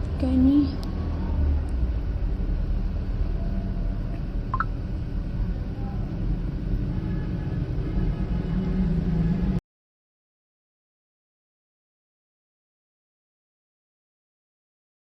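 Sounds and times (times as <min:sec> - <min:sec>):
low rumbling background noise: 0:00.0 - 0:09.6.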